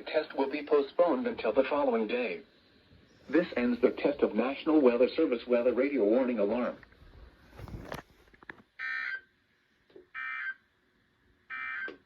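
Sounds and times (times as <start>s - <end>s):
faint rustle: 6.7s - 8.6s.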